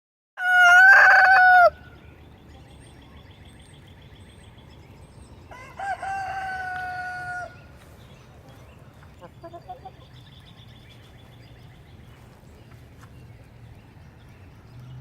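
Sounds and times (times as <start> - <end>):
rooster crowing: 0.4 - 1.8, 5.5 - 7.6.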